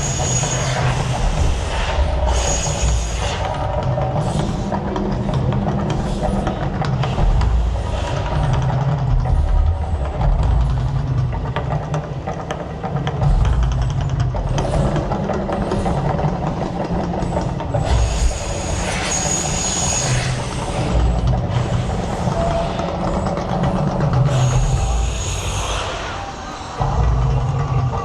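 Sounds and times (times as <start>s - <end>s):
rushing hissing burst: 0.0s - 8.1s, 14.7s - 23.7s
deep uneven rumble: 0.0s - 28.0s.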